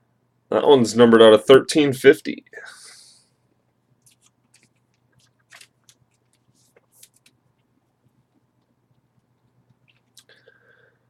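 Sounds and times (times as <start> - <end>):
faint low hum: 0.0 - 11.0
trading cards being handled: 4.0 - 7.4.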